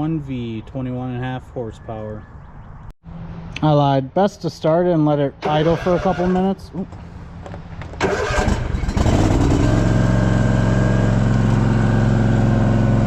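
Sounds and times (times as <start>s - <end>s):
engine cranking and idling: 5.4s - 11.8s.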